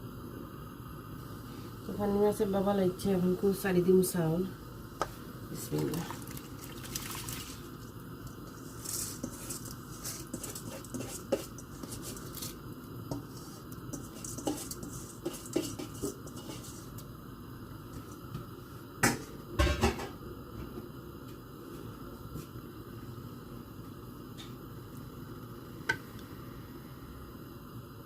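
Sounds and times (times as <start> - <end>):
utensil scraping a cooking pot: 5.7 - 17.1.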